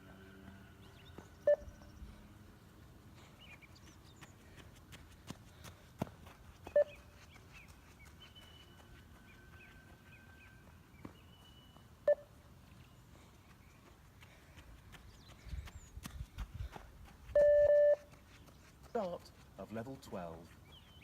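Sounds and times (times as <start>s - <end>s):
short electronic beeps: 1.5s - 1.9s, 6.7s - 7.0s, 12.0s - 12.3s, 17.4s - 18.1s.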